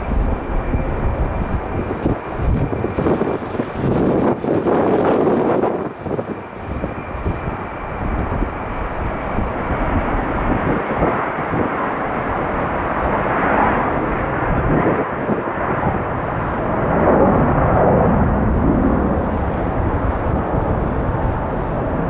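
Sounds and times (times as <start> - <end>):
jet airliner engines rumbling: 0.0 - 22.0
wind buffeting microphone: 0.0 - 22.0.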